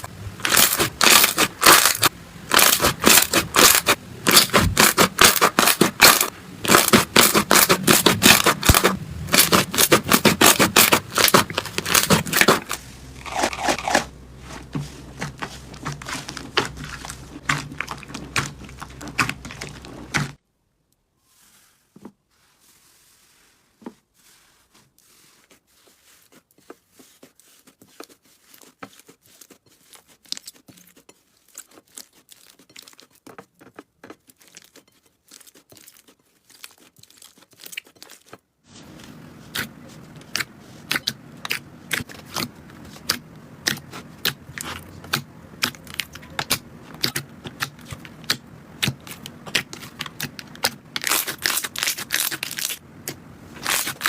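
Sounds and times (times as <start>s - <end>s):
slime crackling and popping: 0.4s - 14.0s, 40.3s - 54.0s.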